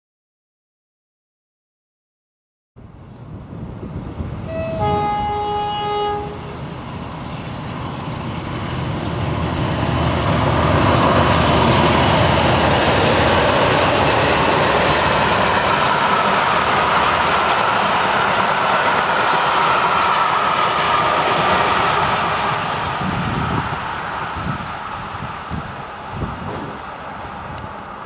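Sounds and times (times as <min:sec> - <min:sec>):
diesel locomotive engines: 0:02.8 - 0:28.0
train rolling past: 0:02.9 - 0:28.0
two-tone train horn: 0:04.5 - 0:06.6.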